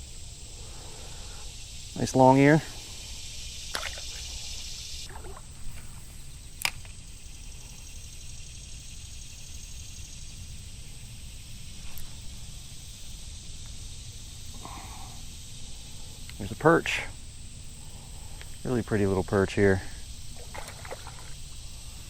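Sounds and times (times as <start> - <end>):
insects chorus: 0.0 - 22.0
sharp click: 6.6 - 7.0.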